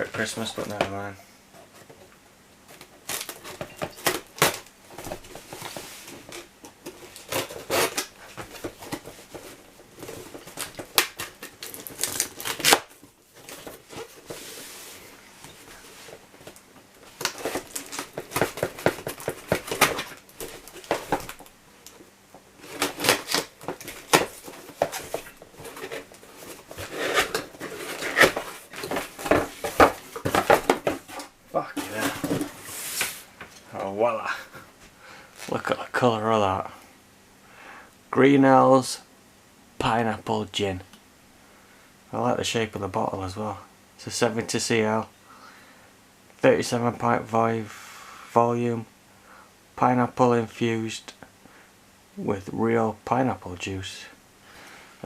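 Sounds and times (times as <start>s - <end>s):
tape and packaging tearing: 2.8s - 4.7s, 7.0s - 8.1s, 10.4s - 13.8s, 17.2s - 21.5s, 22.6s - 32.4s.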